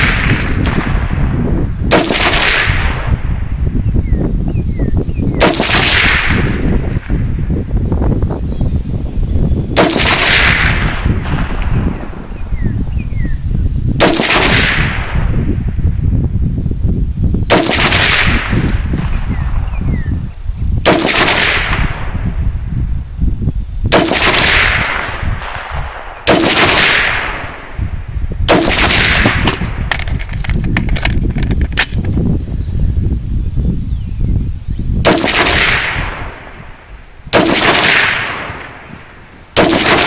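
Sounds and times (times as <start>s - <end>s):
rifle shots: 0.0s - 3.4s, 5.4s - 7.2s, 9.8s - 12.4s, 14.0s - 15.4s, 17.5s - 19.8s, 20.8s - 22.3s, 23.9s - 27.9s, 28.5s - 31.2s, 35.0s - 40.0s.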